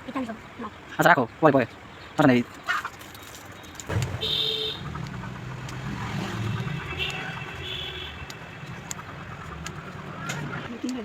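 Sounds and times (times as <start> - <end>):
engine droning: 3.8 - 10.7.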